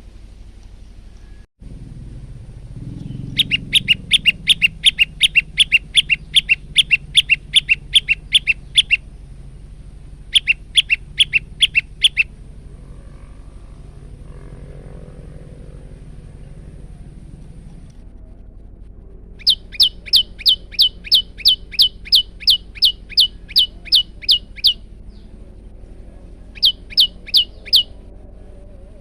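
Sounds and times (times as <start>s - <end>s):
bird rapid chirping song: 2.8s - 9.5s, 10.1s - 12.3s, 19.4s - 25.4s, 26.2s - 28.1s.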